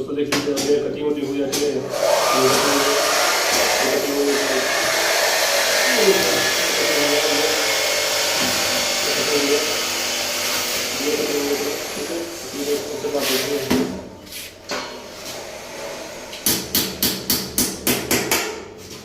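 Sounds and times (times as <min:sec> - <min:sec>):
angle grinder cutting sheet metal: 0:01.4 - 0:13.7.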